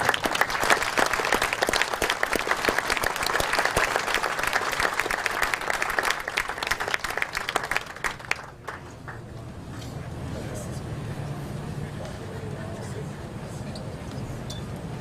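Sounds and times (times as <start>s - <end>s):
audience applauding: 0.0s - 9.3s.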